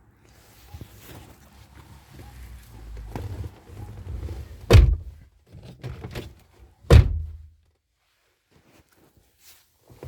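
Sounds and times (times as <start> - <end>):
car door shutting: 3.0 - 5.2, 6.9 - 7.4.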